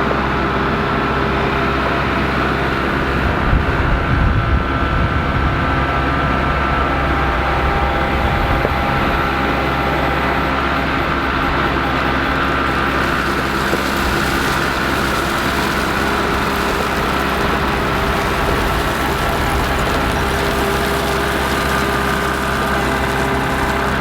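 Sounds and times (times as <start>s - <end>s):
engine running steadily: 0.0s - 24.0s.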